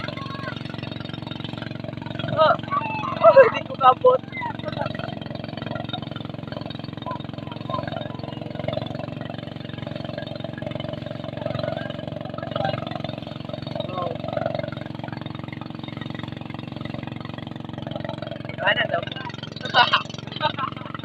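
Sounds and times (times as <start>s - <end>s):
faint voices: 0.0s - 0.8s, 2.2s - 6.0s, 6.8s - 9.2s
motorboat engine running: 0.0s - 21.0s.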